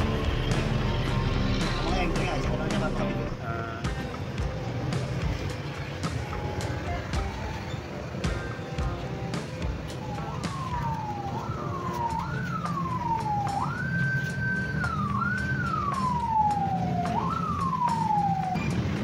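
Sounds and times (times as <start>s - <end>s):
siren-like wailing tone: 0.0s - 3.4s, 9.8s - 19.0s.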